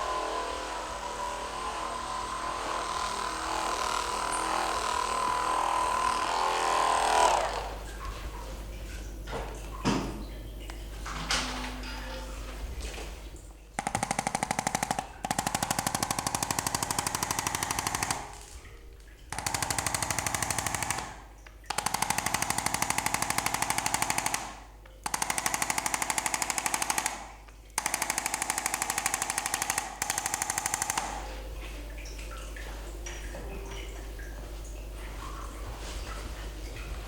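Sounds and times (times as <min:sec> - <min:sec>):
electric percussion device buzzing: 0:00.0 - 0:07.9, 0:13.8 - 0:31.6.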